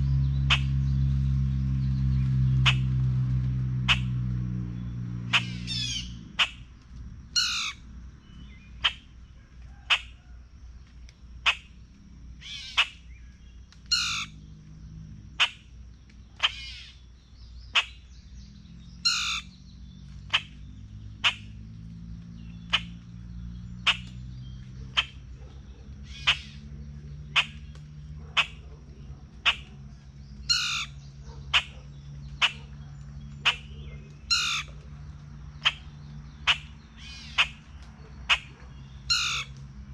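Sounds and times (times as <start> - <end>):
low hum: 0.0 - 9.7
birds chipping and calling: 0.0 - 39.9.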